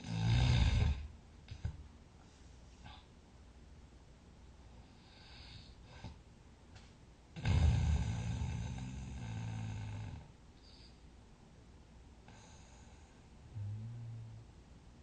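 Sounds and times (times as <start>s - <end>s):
loud low snore: 0.0s - 1.1s, 7.4s - 10.3s, 12.3s - 14.4s
person breathing softly: 10.6s - 11.1s, 12.2s - 14.1s.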